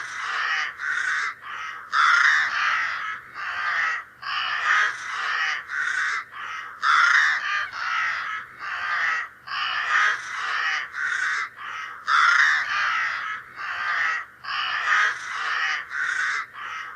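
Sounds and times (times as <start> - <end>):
crow cawing: 0.0 - 16.9.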